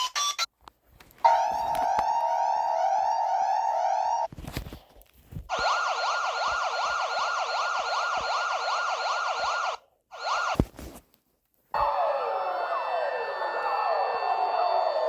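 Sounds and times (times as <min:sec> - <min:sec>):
siren alert tone: 0:01.3 - 0:04.3, 0:05.5 - 0:10.6, 0:11.8 - 0:15.0.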